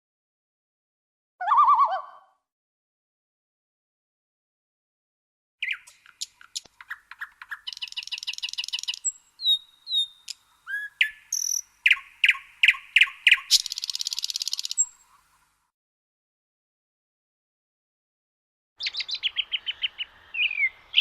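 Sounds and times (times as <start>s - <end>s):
songbird chirping and whistling: 1.4s - 2.2s, 5.6s - 15.1s, 18.8s - 21.0s
buzzy bird trills: 5.6s - 15.4s.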